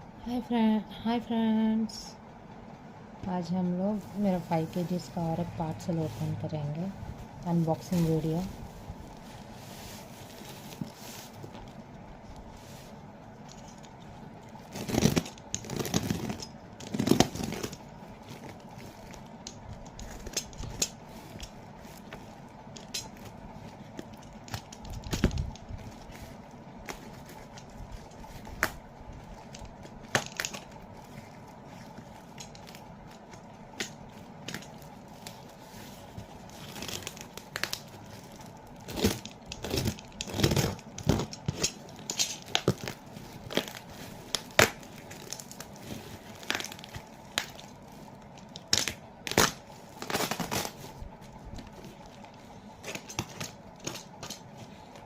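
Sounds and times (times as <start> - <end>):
packaging tearing and crinkling: 13.5 - 55.0.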